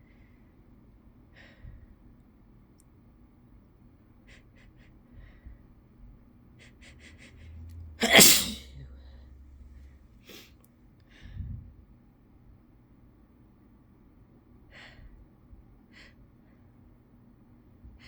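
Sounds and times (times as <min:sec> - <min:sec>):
person sneezing: 0:08.0 - 0:08.8.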